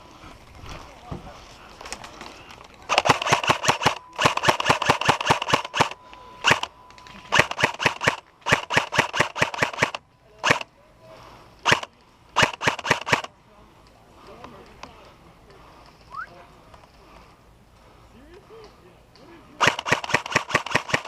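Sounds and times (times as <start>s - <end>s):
airsoft guns firing bursts: 2.9s - 6.7s, 7.3s - 10.7s, 11.6s - 13.3s, 19.6s - 21.0s.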